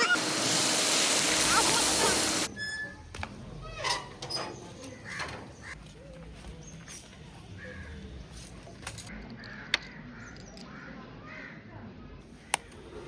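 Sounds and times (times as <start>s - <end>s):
distant voices: 0.0s - 11.4s.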